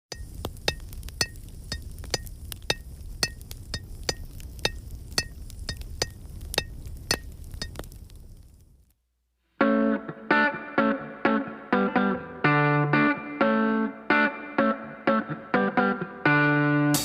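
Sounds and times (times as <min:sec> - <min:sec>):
hammer striking steel on anvil: 0:00.1 - 0:07.8.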